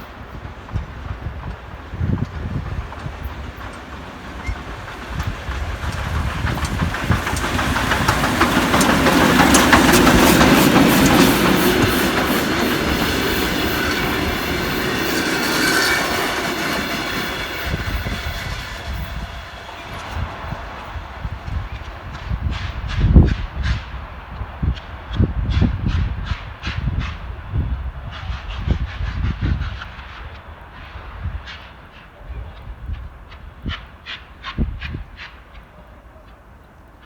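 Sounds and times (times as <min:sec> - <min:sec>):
steam train passing: 0:00.0 - 0:37.0
wheels clattering over rail joints: 0:00.6 - 0:23.7.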